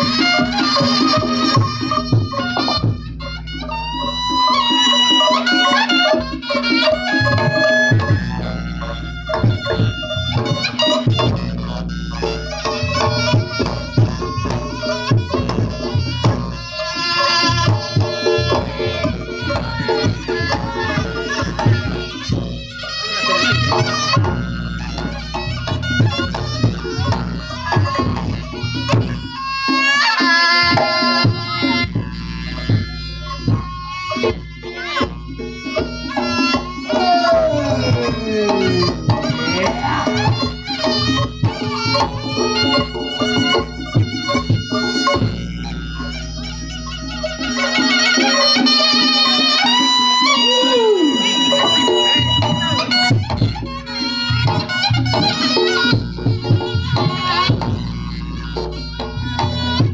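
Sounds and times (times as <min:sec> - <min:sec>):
hand drum strokes: 0:00.0 - 0:59.9
shawm playing wavering melody: 0:00.0 - 0:59.9
drum strikes: 0:30.6 - 0:46.1.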